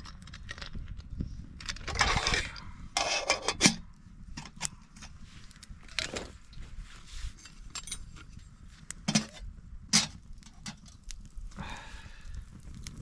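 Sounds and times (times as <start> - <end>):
cooking gear knocking and clinking: 1.6 - 3.8, 9.1 - 10.9.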